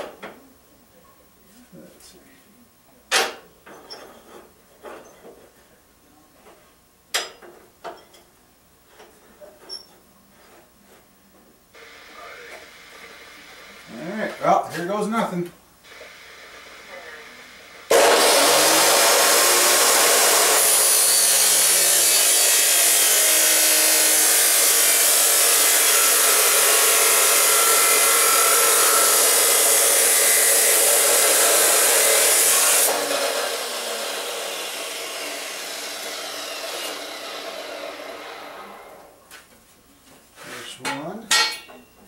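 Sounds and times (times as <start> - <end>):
cut-off wheel grinding steel: 17.9 - 39.0.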